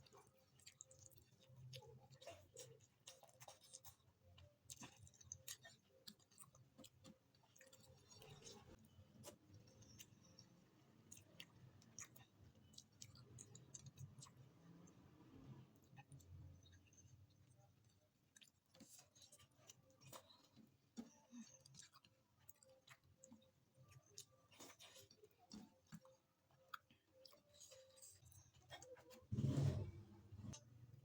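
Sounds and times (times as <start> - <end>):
person chewing food: 0.0 - 31.0.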